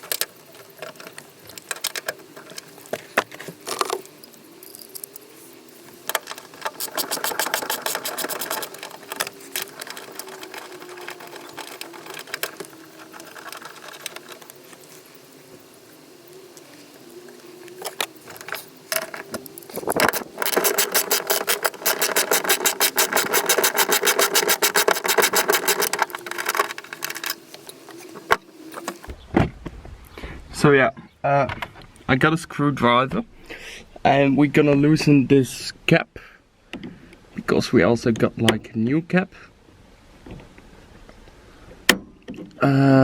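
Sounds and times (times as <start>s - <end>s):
faint steady hum: 0.0s - 43.0s
rapid mechanical rattling: 6.0s - 15.2s, 17.8s - 29.1s.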